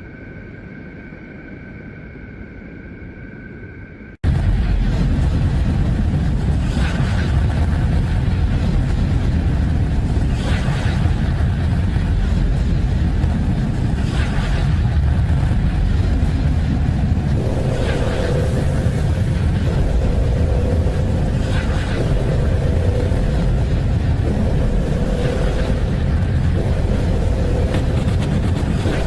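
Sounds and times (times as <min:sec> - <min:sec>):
deep rumbling drone: 0:00.0 - 0:29.0
drone of high tones: 0:17.3 - 0:29.0.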